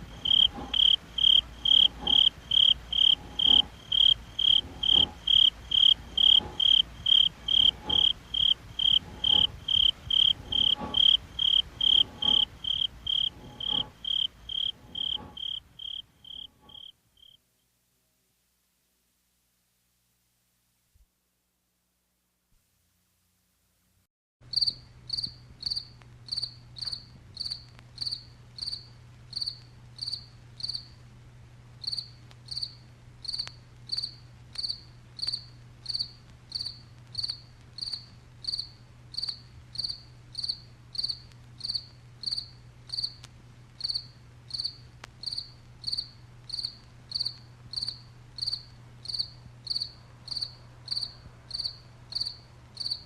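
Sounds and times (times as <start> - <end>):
cricket chirping: 0.0 - 17.4, 24.5 - 31.0, 31.8 - 43.2, 43.8 - 53.0
steady low hum: 0.0 - 17.4.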